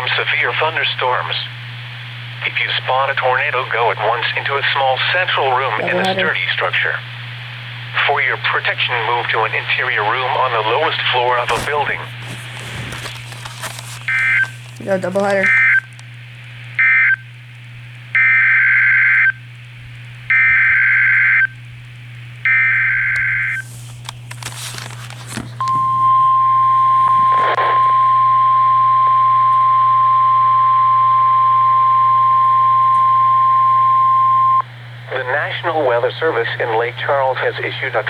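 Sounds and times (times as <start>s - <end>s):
low electrical hum: 0.0s - 38.0s
static crackle: 8.7s - 16.8s.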